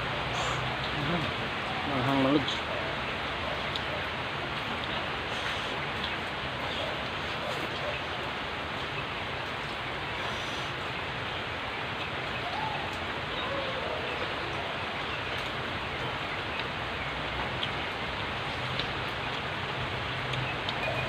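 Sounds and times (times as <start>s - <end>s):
steady hiss: 4.9s - 7.4s, 9.5s - 11.2s.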